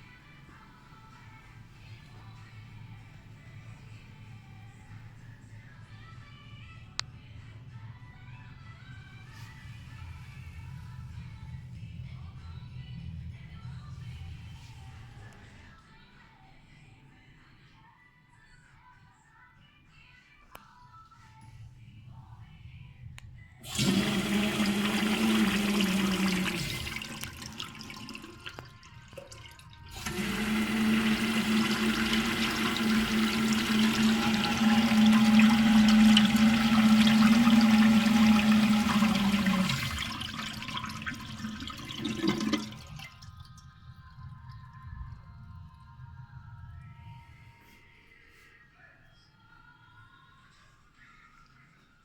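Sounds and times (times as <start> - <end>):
urinal flushing water: 23.6 - 46.2.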